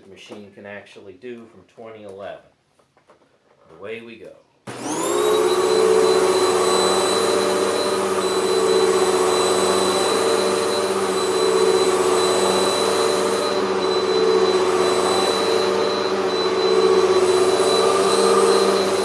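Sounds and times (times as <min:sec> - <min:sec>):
vacuum cleaner running over carpet: 0:04.7 - 0:19.0.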